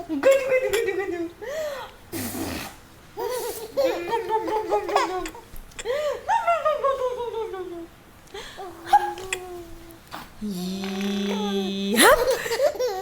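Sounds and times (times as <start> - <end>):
young child laughing: 11.9 - 13.0.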